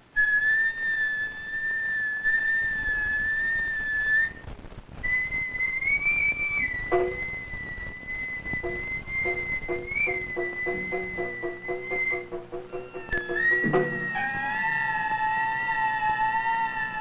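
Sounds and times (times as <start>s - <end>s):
high whistle-like note: 5.0s - 17.0s
soft plucked notes: 6.9s - 7.4s, 8.6s - 15.0s.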